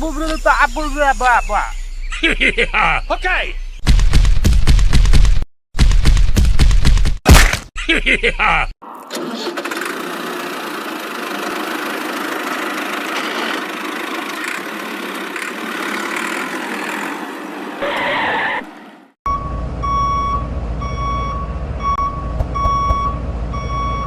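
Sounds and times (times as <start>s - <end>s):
noisy machine running: 9.6s - 17.0s
reversing alarm beeping: 19.3s - 24.0s.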